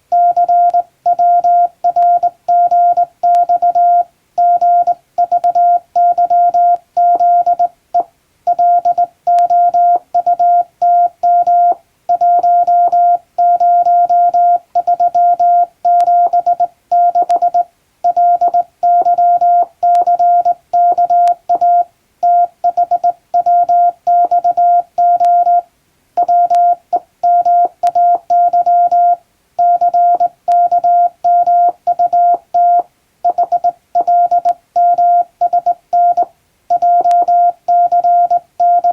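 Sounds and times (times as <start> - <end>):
morse code beeps: 0.1 - 7.7, 8.5 - 38.9.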